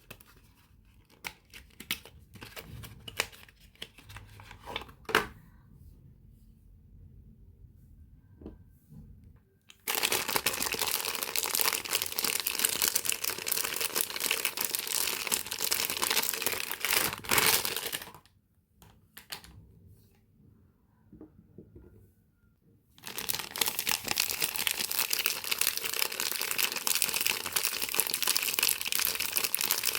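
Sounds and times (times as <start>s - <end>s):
wrapper crinkling: 9.7s - 18.3s, 23.0s - 29.9s.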